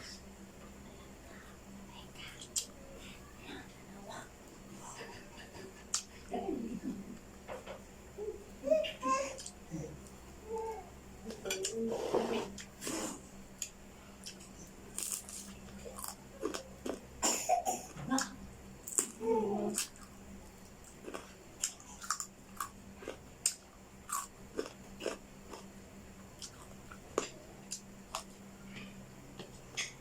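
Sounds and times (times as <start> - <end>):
crunching and chewing food: 12.4 - 17.2, 18.0 - 30.0.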